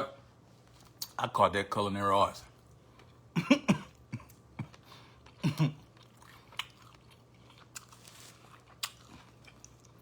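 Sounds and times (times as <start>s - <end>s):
man chewing and crunching: 3.9s - 10.0s.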